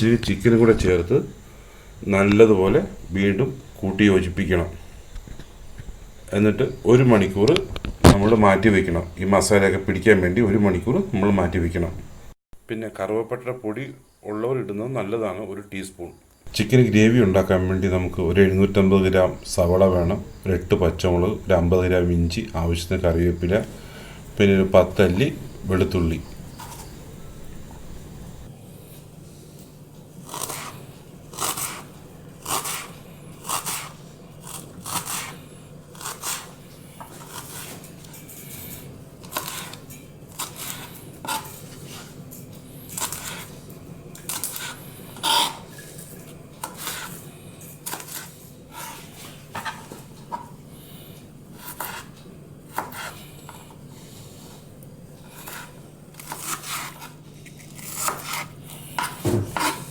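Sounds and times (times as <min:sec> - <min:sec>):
faint low hum: 0:00.0 - 0:36.9
utensils knocking and scraping: 0:59.0 - 0:59.9.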